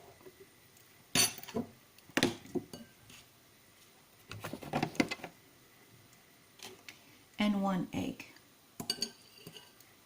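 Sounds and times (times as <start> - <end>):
spoon clinking against bowl: 8.8 - 9.8.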